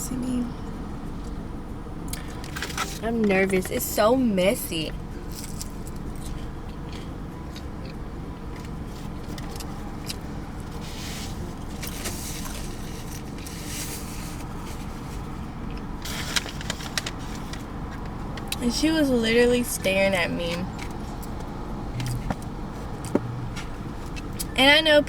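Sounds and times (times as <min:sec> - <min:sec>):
car engine idling hum: 0:00.0 - 0:25.0
rustling: 0:10.6 - 0:18.1.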